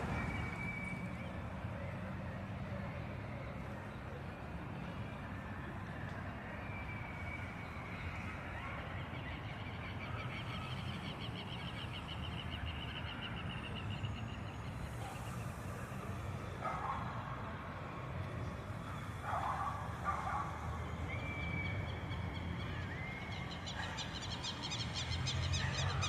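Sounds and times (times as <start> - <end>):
birds calling: 18.8 - 26.0.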